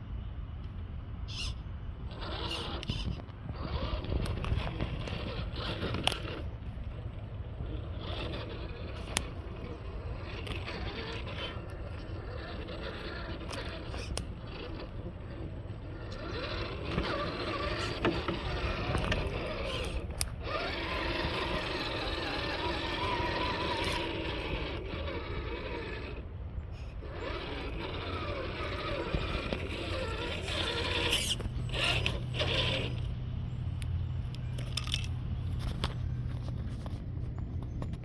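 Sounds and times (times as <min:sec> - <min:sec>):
toy truck electric motor whining: 0:01.3 - 0:33.8, 0:34.6 - 0:36.8.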